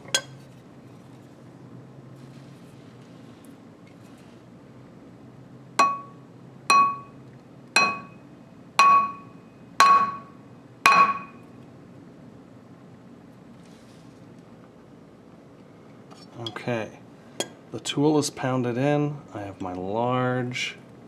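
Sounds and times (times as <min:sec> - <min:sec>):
hammer striking metal: 0:05.8 - 0:07.1, 0:07.8 - 0:08.2, 0:08.8 - 0:10.3, 0:10.9 - 0:11.4.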